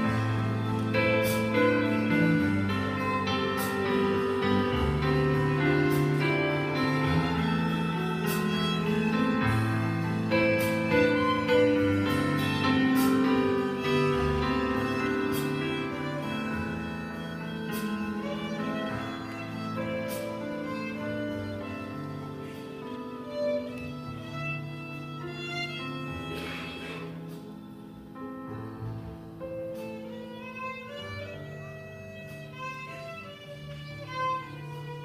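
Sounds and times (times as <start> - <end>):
church ensemble with violin lead: 0.0 - 35.0.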